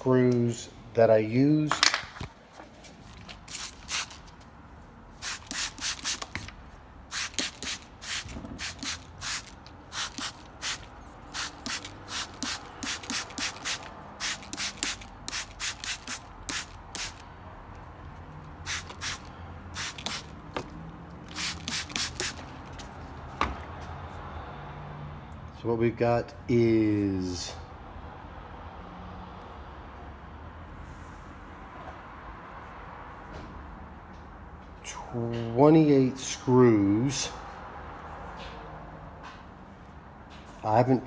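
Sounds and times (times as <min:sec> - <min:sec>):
spray bottle hissing sprays: 0:03.5 - 0:04.2, 0:05.2 - 0:06.4, 0:07.1 - 0:17.2, 0:18.7 - 0:20.4, 0:21.3 - 0:22.5.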